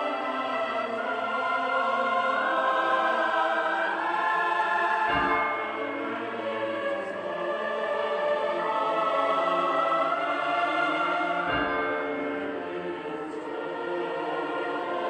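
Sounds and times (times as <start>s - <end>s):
church bells tolling: 5.0s - 15.0s.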